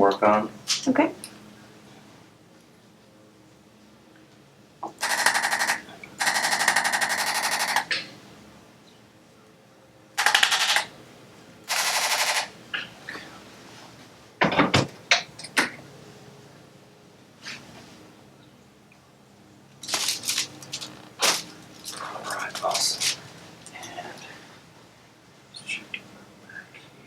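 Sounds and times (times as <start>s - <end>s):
sharp clicks: 4.8s - 8.0s, 10.2s - 10.9s, 11.7s - 12.5s
electric tool rapid tapping: 5.0s - 8.0s, 10.2s - 10.9s, 11.7s - 12.5s.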